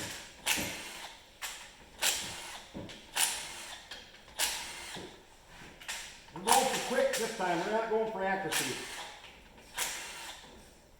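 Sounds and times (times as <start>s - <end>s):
hand tools and metal parts clattering: 0.0s - 7.9s.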